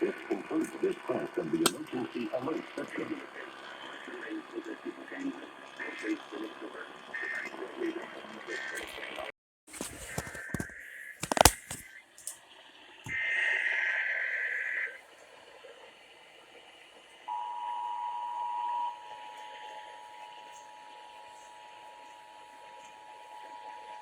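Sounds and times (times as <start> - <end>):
crackling clicks: 0.0 - 13.3
two-tone attention signal: 17.3 - 21.7.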